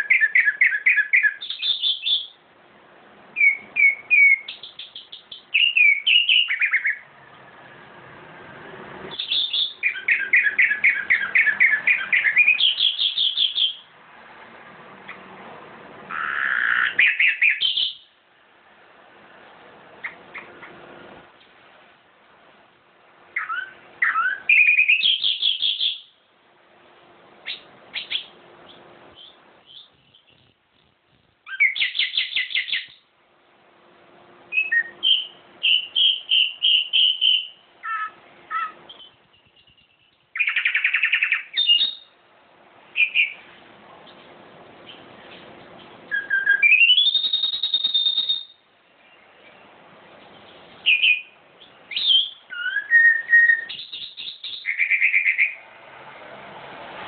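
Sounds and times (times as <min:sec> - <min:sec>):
songbird trilling and chirping: 0:00.0 - 0:02.4, 0:03.4 - 0:07.4, 0:09.1 - 0:13.9, 0:16.1 - 0:18.1, 0:23.4 - 0:26.1, 0:27.4 - 0:30.6, 0:31.5 - 0:33.0, 0:34.5 - 0:42.2, 0:43.0 - 0:43.4, 0:44.8 - 0:49.7, 0:50.4 - 0:55.6.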